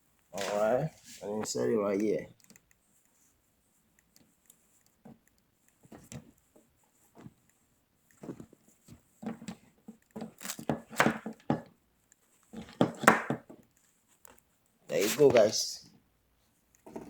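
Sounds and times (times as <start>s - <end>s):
microphone handling clicks and rustling: 5.0s - 7.5s, 8.1s - 15.6s.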